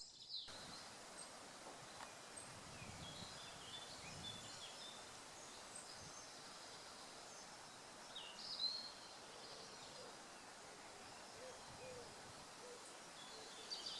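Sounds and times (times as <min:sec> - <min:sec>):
soft background hiss: 0:00.2 - 0:13.9
wild birds calling: 0:08.8 - 0:13.9.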